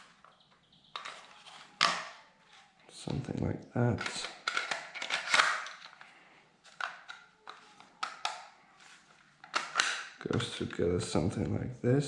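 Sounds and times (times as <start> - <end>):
small plastic parts clicking: 3.9 - 6.1.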